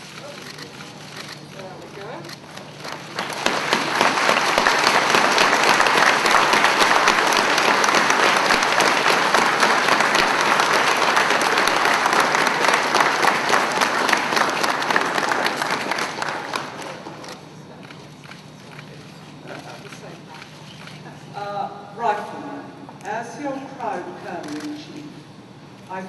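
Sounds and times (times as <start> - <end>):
audience applauding: 2.7 - 17.4.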